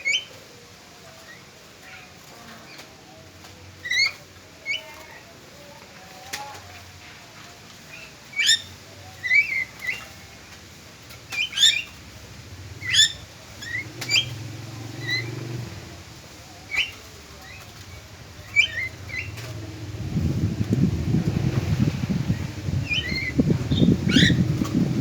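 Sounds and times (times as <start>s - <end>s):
bird chirping sharply: 12.8s - 14.4s.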